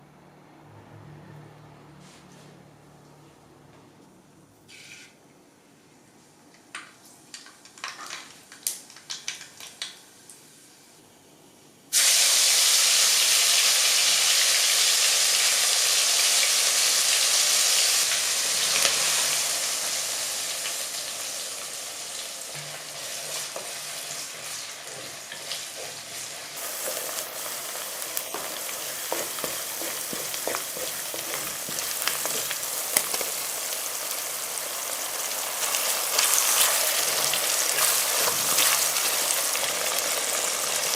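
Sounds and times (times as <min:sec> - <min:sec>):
food sizzling in hot oil: 0:11.9 - 0:40.9.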